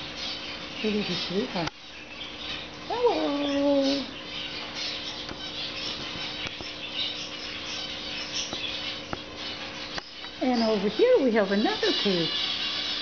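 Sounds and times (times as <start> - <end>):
cage birds chirping: 0.0 - 13.0.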